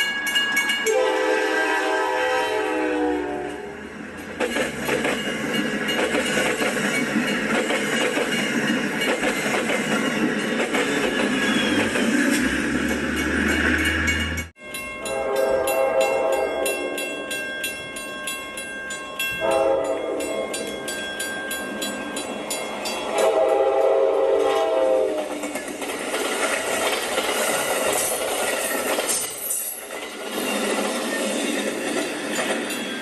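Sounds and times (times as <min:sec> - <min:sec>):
passing train rumble: 0:00.0 - 0:33.0
locomotive horn blasts: 0:00.8 - 0:03.8, 0:15.0 - 0:16.9, 0:19.4 - 0:20.5, 0:23.1 - 0:25.3.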